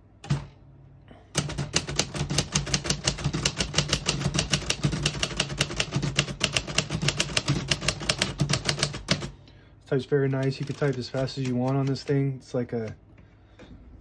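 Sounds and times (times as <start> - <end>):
manual typewriter typing fast: 0.2 - 0.5, 1.3 - 9.3, 10.2 - 13.0.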